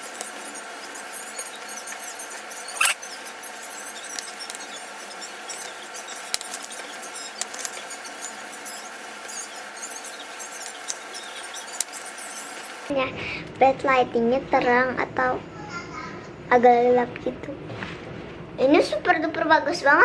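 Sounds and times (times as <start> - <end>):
pen squeaking on paper: 0.0 - 12.9.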